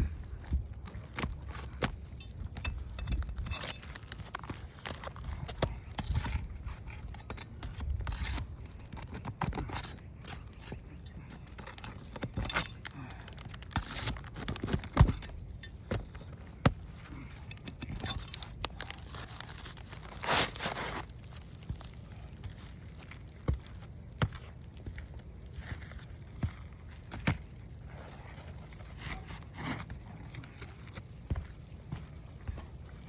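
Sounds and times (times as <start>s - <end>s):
shingles crackling and tearing: 0.0s - 33.0s
pry bar scraping and clinking: 1.2s - 13.0s, 13.7s - 18.8s.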